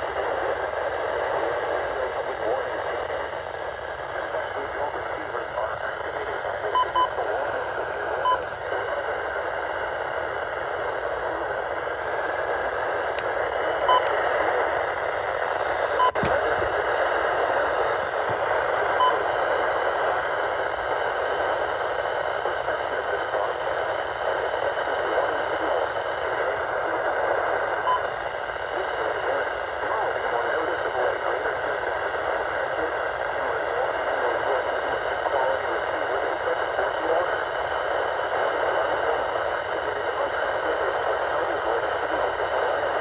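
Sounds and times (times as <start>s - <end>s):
radio static hiss: 0.0s - 43.0s
short faint beeps: 8.2s - 8.5s, 13.8s - 14.1s.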